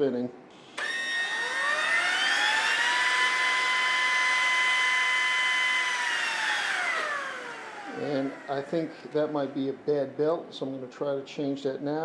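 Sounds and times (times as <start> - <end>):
vacuum motor whining: 0.5 - 9.8.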